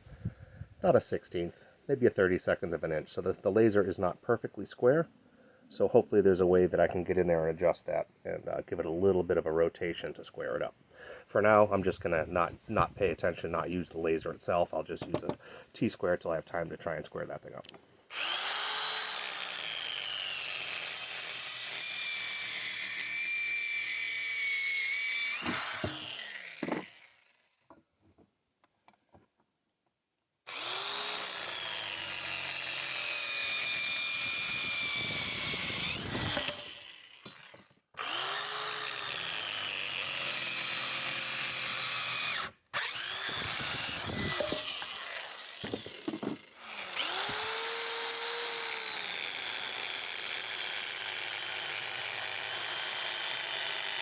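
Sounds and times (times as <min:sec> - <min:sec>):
circular saw cutting wood: 0:18.1 - 0:27.8, 0:30.5 - 0:54.0.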